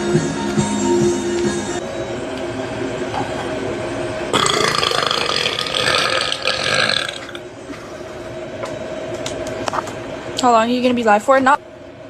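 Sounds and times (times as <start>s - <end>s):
person burping: 4.3s - 7.4s.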